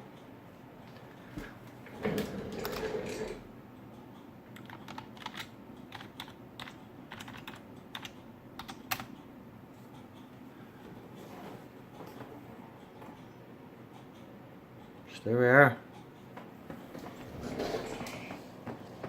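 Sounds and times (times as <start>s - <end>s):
keyboard typing: 4.5s - 9.2s.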